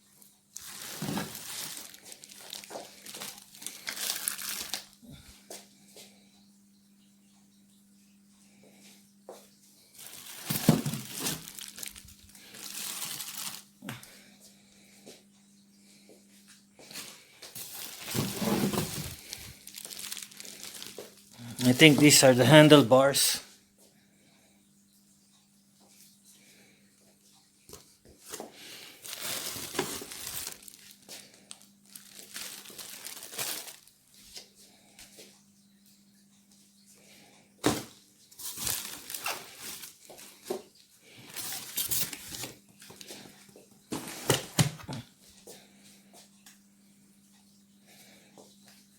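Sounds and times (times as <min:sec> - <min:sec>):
packaging crinkling and rustling: 0:00.5 - 0:05.0, 0:10.0 - 0:14.0, 0:16.9 - 0:22.8, 0:28.3 - 0:34.5, 0:37.6 - 0:45.0.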